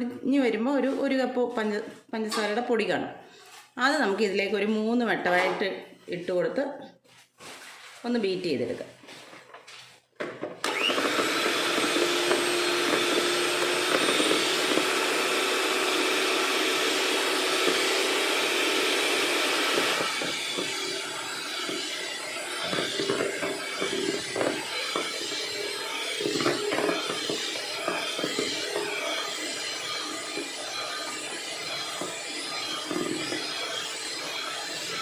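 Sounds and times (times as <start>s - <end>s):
electric mixer running: 10.5s - 35.0s.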